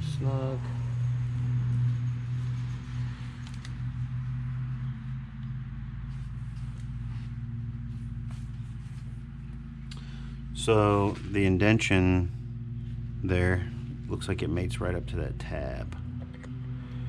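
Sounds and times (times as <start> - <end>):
low machine hum: 0.0 - 17.0.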